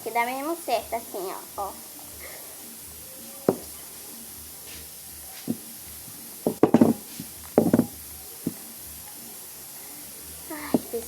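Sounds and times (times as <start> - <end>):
sharp knocks on hard surface: 3.5 - 3.7, 6.5 - 8.6.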